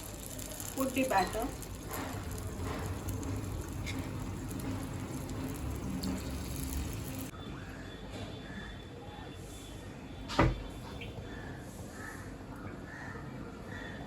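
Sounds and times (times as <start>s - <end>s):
batter sizzling in a hot pan: 0.0s - 7.3s.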